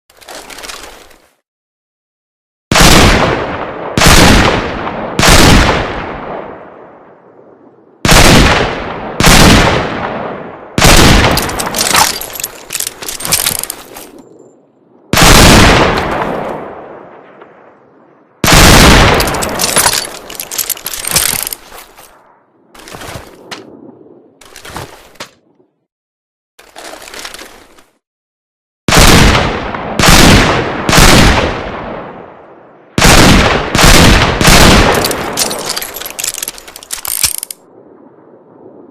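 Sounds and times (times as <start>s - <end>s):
revolver gunshots echoing: 2.7s - 6.6s, 8.0s - 13.8s, 15.2s - 17.6s, 18.4s - 21.5s, 33.0s - 35.8s
dense crackling clatter: 11.1s - 14.2s, 18.8s - 22.1s, 34.7s - 37.6s.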